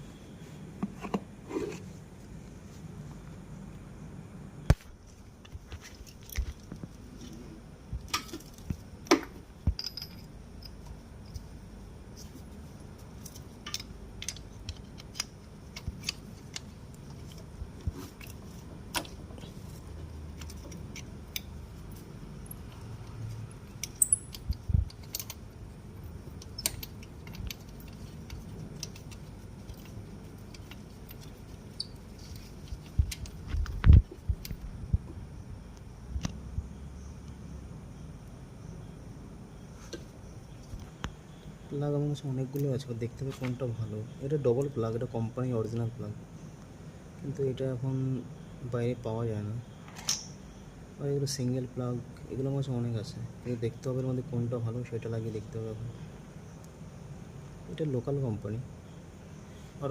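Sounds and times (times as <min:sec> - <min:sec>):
metal hand tools clinking: 0:09.8 - 0:10.8, 0:23.8 - 0:25.4.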